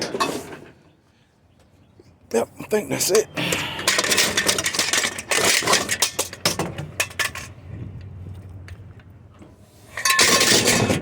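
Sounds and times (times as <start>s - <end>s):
scrap metal clattering: 3.8s - 7.5s, 9.8s - 11.0s.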